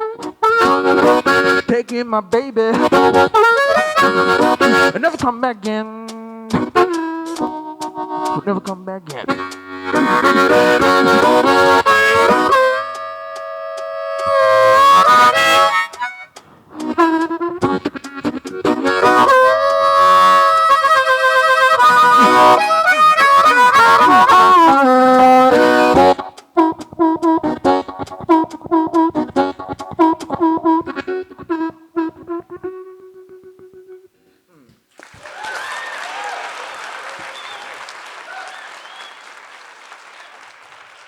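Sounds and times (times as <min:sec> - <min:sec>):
blues harmonica: 0:00.0 - 0:34.8, 0:37.1 - 0:39.2.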